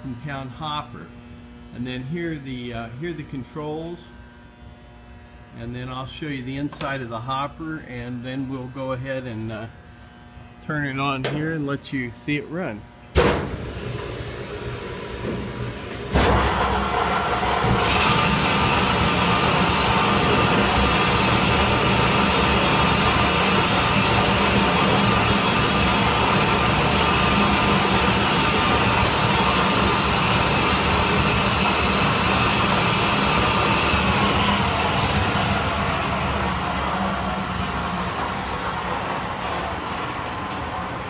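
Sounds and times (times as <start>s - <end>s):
mixer grinder motor humming: 13.6s - 41.0s
higher-pitched whine: 16.1s - 39.8s.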